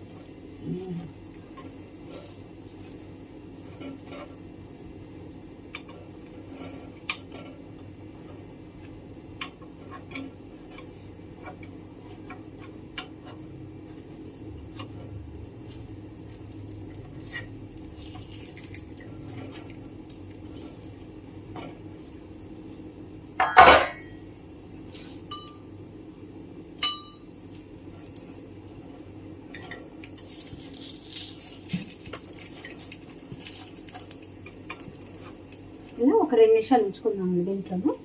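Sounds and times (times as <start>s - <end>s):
metal spoon tapping pan: 26.8s - 27.2s.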